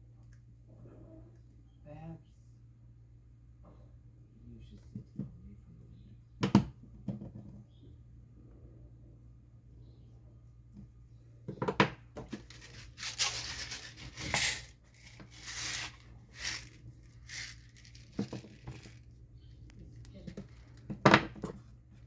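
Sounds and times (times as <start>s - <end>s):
paper rustling: 12.3s - 19.1s.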